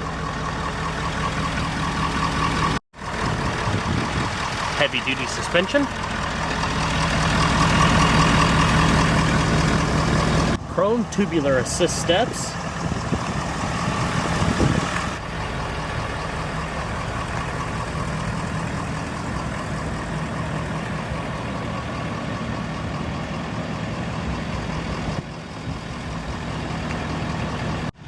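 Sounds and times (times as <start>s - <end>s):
truck engine idling: 0.0s - 28.0s.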